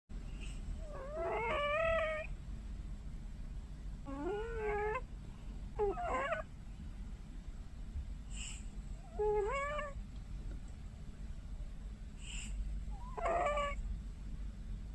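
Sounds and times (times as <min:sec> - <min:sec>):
cat squeaking: 0:00.9 - 0:02.3, 0:04.1 - 0:05.0, 0:05.8 - 0:06.5, 0:09.0 - 0:10.0, 0:12.9 - 0:13.8.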